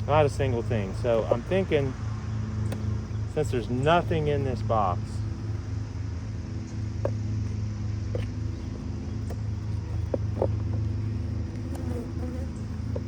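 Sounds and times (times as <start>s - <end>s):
bee colony humming: 0.0s - 13.0s
single bees buzzing past: 10.6s - 13.0s.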